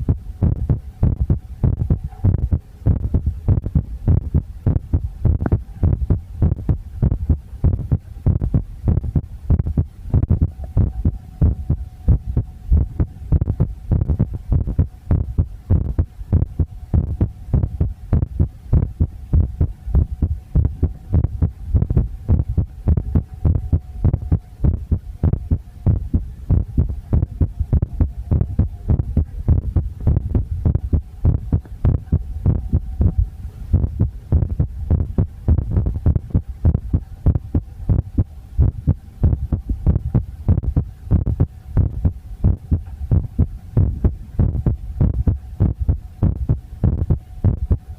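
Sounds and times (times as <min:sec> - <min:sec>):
faint steady hum: 0:00.0 - 0:47.9
muffled low thumps: 0:00.0 - 0:47.9.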